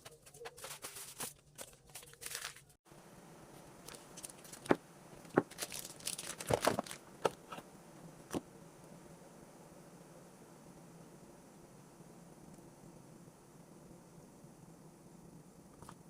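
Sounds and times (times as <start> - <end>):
plastic crinkling and rustling: 0.0 - 2.8, 3.8 - 7.6.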